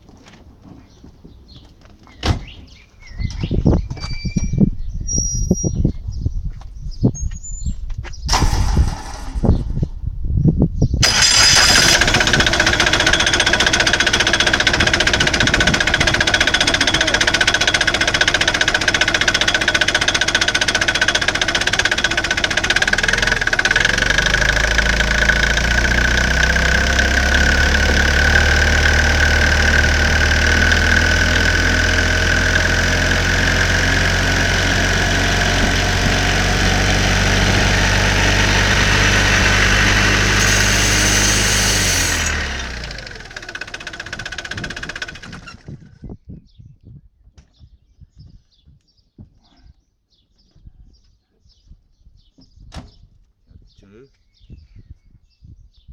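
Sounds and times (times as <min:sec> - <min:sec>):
microcar engine starting and running: 0:08.3 - 0:46.0.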